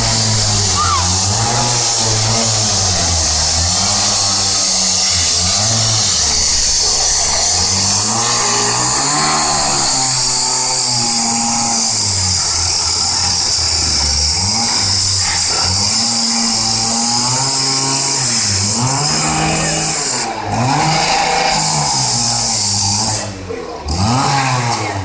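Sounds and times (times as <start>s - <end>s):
chainsaw cutting metal: 0.0s - 25.0s.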